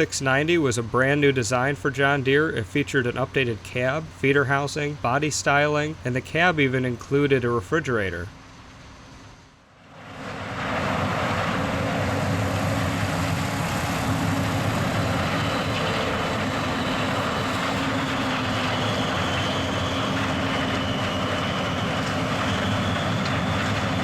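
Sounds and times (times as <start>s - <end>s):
faint high whine: 0.0s - 24.0s
harvest machinery engine drone: 9.9s - 24.0s.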